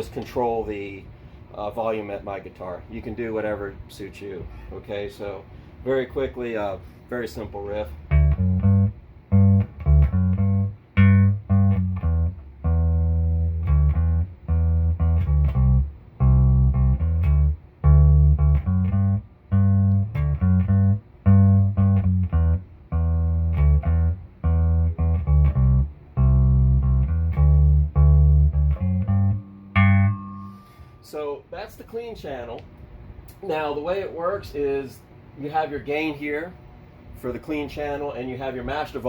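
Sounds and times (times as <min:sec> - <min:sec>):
electric bass riff: 0:07.9 - 0:31.0.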